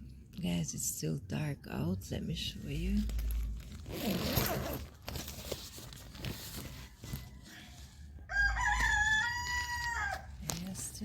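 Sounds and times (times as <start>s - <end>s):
rustling: 2.4s - 11.0s
zipper being pulled open: 3.0s - 7.2s.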